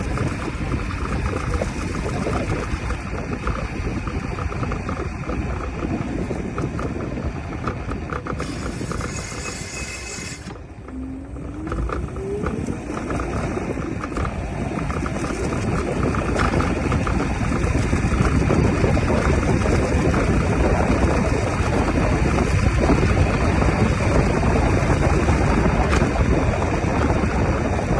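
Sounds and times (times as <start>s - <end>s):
electric motor whine: 0.0s - 13.8s
fast repeated wheel clicking: 0.0s - 27.9s
road rumble: 0.0s - 27.9s
wind: 0.0s - 27.9s.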